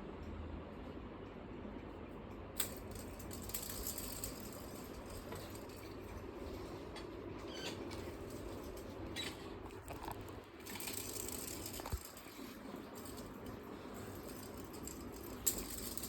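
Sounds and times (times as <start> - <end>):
low room hum: 0.0 - 16.0
light clicks and rattles: 6.9 - 16.0.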